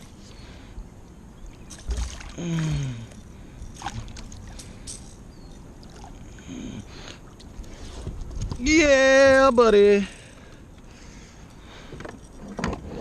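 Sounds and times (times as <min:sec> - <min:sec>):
water splashing: 0:01.8 - 0:04.8.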